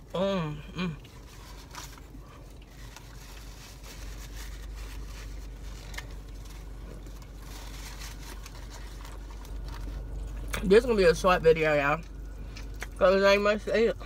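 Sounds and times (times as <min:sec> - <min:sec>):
low hum of car cabin: 0:00.0 - 0:14.0
quiet chewing: 0:12.0 - 0:13.0.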